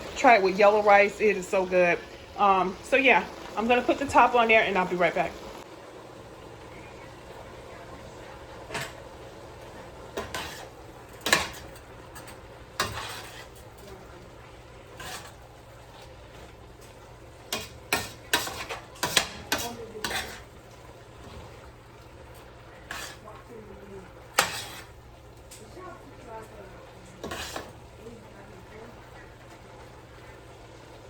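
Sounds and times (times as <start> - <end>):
pots and utensils clattering: 7.7 - 29.6.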